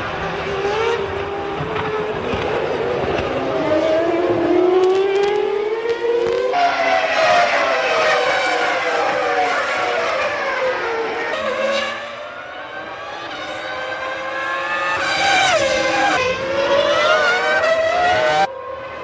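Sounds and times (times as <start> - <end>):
racing car engine: 0.0 - 19.0.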